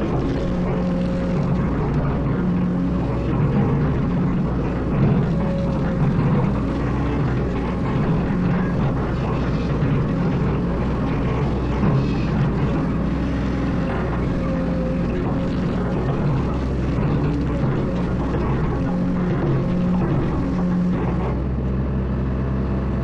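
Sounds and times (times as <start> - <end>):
diesel engine droning: 0.0 - 23.0.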